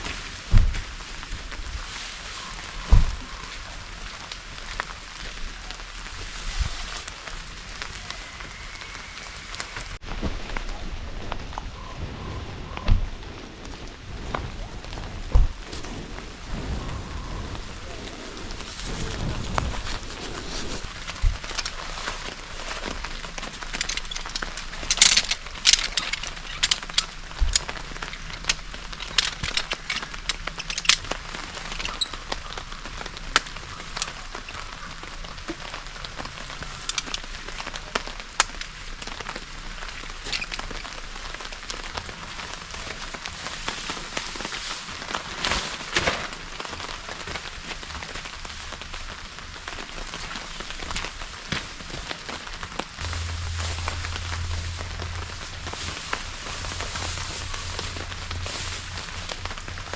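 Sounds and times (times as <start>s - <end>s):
rain hiss: 0.0s - 59.9s
raindrops tapping: 0.0s - 59.9s.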